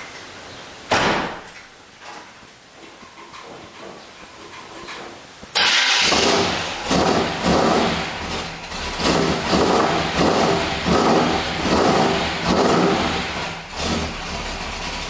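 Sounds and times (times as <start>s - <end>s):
engine starting and revving: 5.6s - 15.0s.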